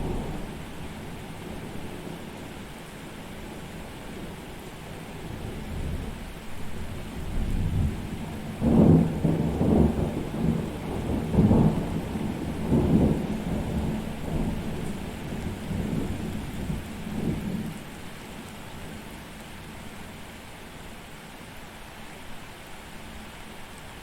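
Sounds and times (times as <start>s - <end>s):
rolling thunder: 0.0s - 1.7s, 6.9s - 17.8s
rain hiss: 0.0s - 24.0s.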